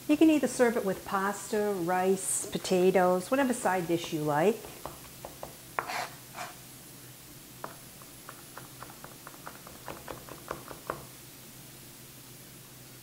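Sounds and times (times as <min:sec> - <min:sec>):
knife tapping on cutting board: 0:04.6 - 0:05.9, 0:07.6 - 0:11.1.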